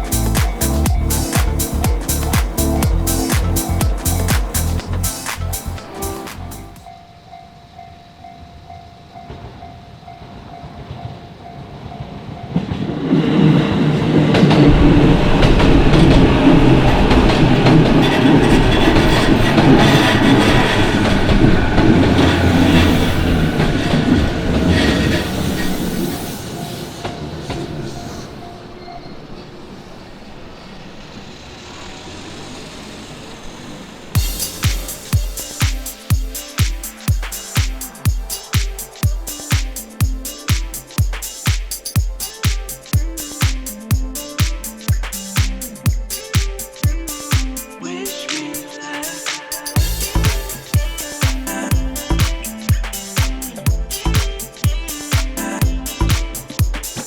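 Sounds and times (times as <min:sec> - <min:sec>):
crossing warning bell ringing: 0:00.0 - 0:29.9
electric train clattering past: 0:00.0 - 0:57.0.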